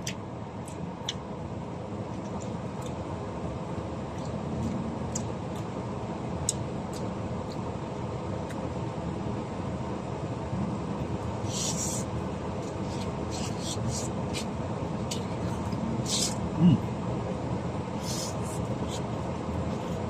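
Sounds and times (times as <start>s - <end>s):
eating clicks and smacks: 0.0s - 1.3s, 2.1s - 3.0s, 4.1s - 5.8s.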